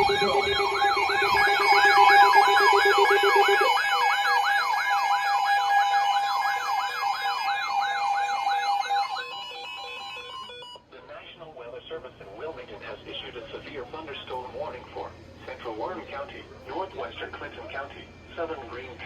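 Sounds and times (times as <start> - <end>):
low pulsing tone: 0.0 - 4.2
loud warbling siren: 0.0 - 10.8
steady alert tones: 0.0 - 10.8.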